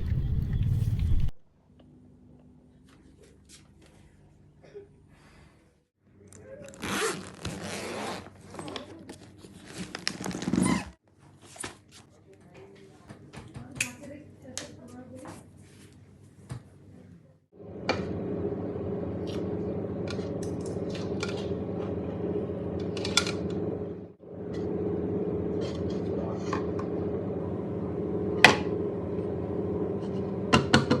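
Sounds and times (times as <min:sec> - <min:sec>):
steady machine hum: 0:17.6 - 0:31.0.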